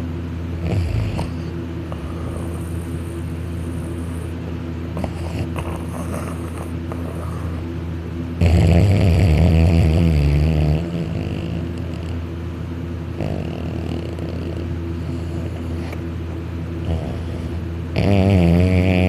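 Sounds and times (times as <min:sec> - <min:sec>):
man snoring loudly: 0:00.6 - 0:01.4, 0:08.4 - 0:12.2, 0:13.2 - 0:15.7, 0:16.8 - 0:19.0.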